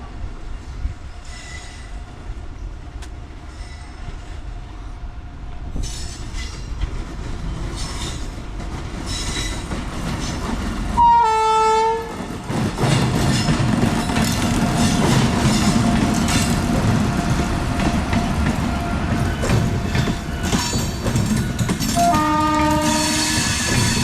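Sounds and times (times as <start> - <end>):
train rumbling: 0.0 - 24.0
train wheels screeching: 1.1 - 2.1, 3.4 - 4.6, 5.7 - 6.8, 7.4 - 8.4, 9.0 - 10.5, 12.9 - 24.0
train horn: 11.0 - 12.2, 21.9 - 23.7.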